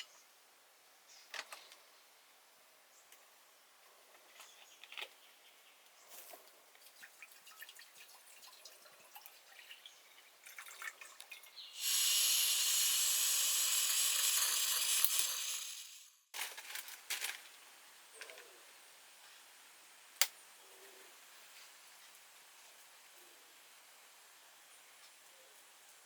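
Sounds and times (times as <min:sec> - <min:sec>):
faint drips and ticks: 0:05.8 - 0:11.7
water pouring: 0:06.8 - 0:16.1.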